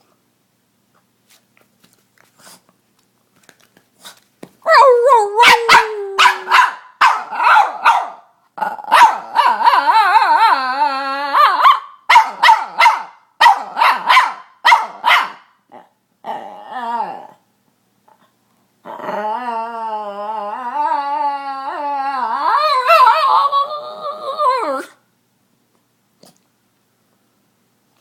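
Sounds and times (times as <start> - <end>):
dog howling: 4.7 - 6.7, 8.9 - 11.7, 19.0 - 25.0
dog barking: 5.4 - 8.3, 8.9 - 9.5, 11.5 - 15.6.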